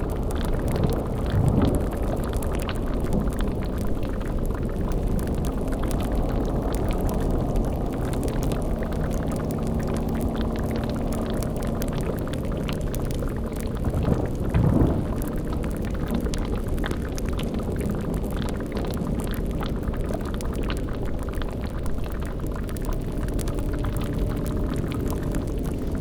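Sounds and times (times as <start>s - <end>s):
cauldron boiling and bubbling: 0.0s - 26.0s
fire crackling: 0.0s - 26.0s.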